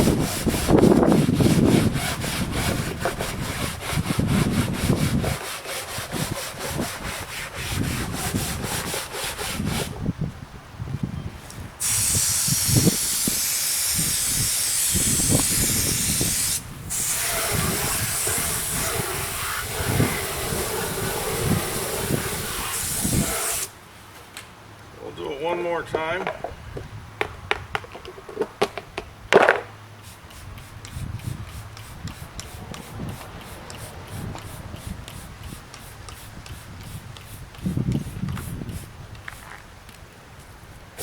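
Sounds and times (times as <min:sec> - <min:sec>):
brush scrubbing rubber: 0:00.0 - 0:10.0, 0:17.0 - 0:23.7
spray hissing: 0:11.8 - 0:23.7.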